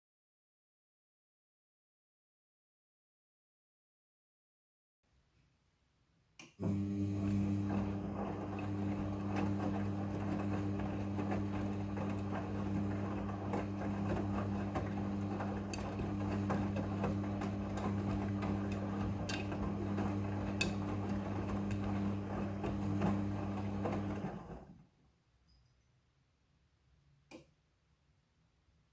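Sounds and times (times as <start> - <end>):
washing machine humming and churning: 6.6 - 24.8.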